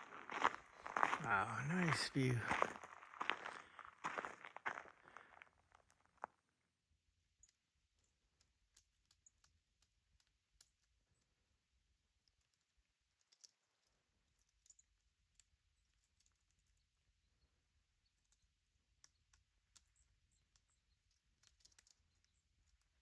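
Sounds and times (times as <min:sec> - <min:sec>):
faint little ticks: 0:19.0 - 0:23.0.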